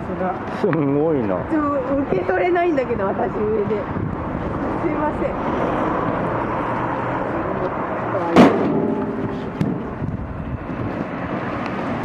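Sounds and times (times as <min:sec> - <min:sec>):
steady background noise: 0:00.0 - 0:12.0
heavy thud: 0:08.3 - 0:10.4.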